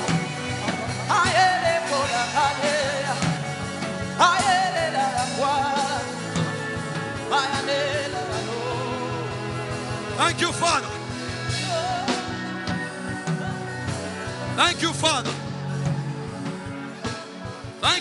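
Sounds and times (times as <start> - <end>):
person singing: 0.0 - 6.6, 7.2 - 10.9, 11.5 - 15.0
steady drum beat: 0.0 - 18.0.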